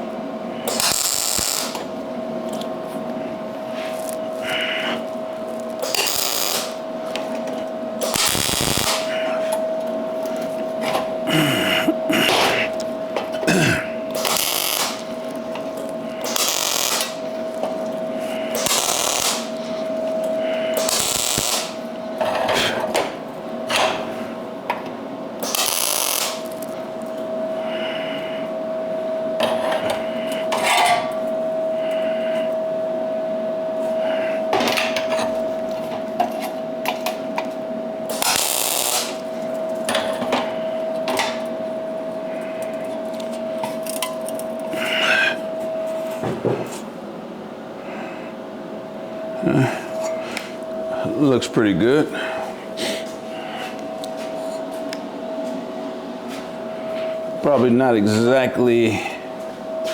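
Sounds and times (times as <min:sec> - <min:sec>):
steady hum: 0:00.0 - 0:59.9
welder crackling hiss: 0:00.7 - 0:01.8, 0:05.8 - 0:06.8, 0:08.0 - 0:09.1, 0:14.1 - 0:15.1, 0:16.2 - 0:17.2, 0:18.5 - 0:19.5, 0:20.8 - 0:21.8, 0:25.4 - 0:26.7, 0:38.1 - 0:39.2.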